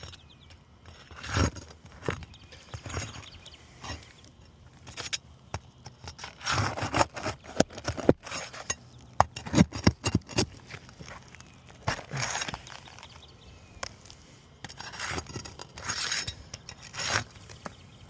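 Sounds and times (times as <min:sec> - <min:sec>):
shingles clicking and knocking: 0:00.0 - 0:13.1
roof shingles scraping and rubbing: 0:00.8 - 0:04.2, 0:05.9 - 0:08.7, 0:09.4 - 0:13.3, 0:14.7 - 0:17.8.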